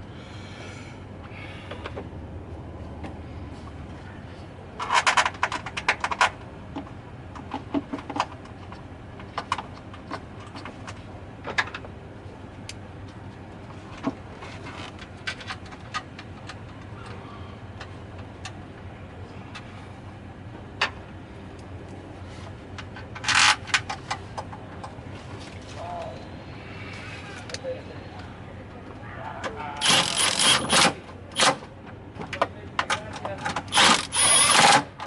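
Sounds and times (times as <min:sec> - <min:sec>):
steady low hum: 0:00.0 - 0:35.0
hand tools and metal parts clinking: 0:29.8 - 0:31.7, 0:32.3 - 0:35.0.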